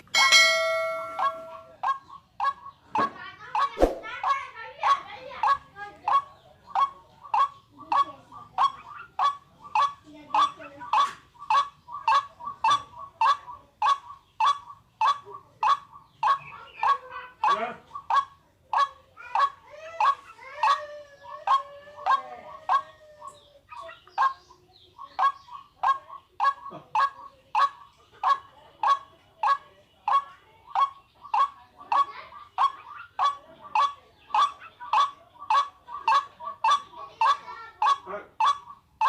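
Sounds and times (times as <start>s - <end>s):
waterhen calling: 0.7s - 39.0s
wavering gliding bird calls: 0.8s - 39.0s.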